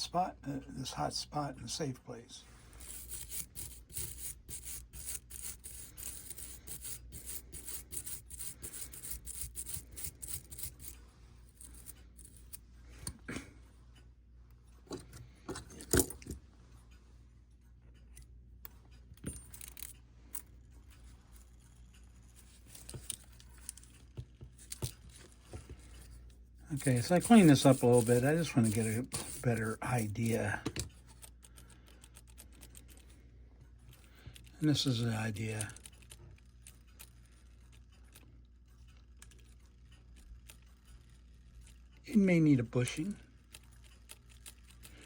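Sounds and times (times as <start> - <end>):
small metal tools clicking: 18.1 - 25.3, 33.9 - 42.1, 42.8 - 45.0.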